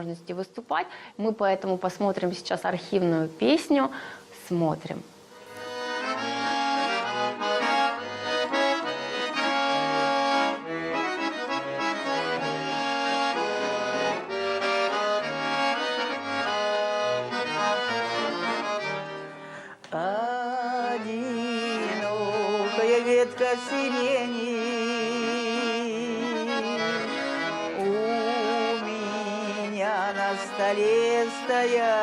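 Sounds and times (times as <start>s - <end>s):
accordion melody: 5.3s - 32.0s
woman singing: 19.9s - 32.0s.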